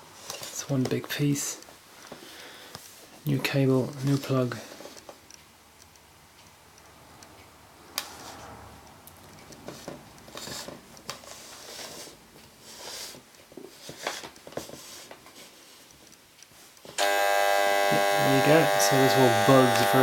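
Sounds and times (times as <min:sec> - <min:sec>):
clock handling clicks and taps: 0:04.9 - 0:08.1
rustling: 0:09.2 - 0:17.0.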